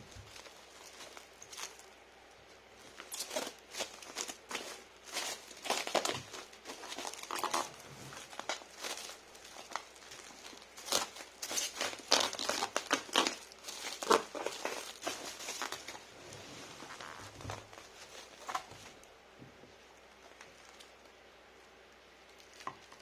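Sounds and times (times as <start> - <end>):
packing material crinkling: 0.0 - 2.0, 2.7 - 19.1.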